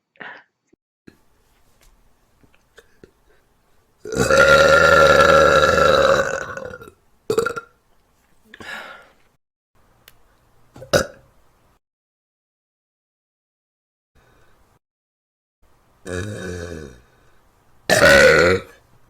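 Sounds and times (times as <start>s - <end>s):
person burping: 4.0s - 7.7s, 10.8s - 11.3s, 16.1s - 17.1s, 17.9s - 18.8s.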